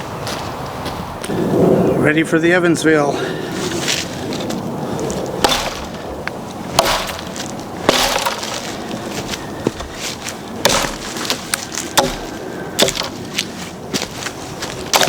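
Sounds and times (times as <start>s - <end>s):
axe chopping wood: 5.4s - 6.1s, 6.7s - 9.0s, 9.7s - 13.2s.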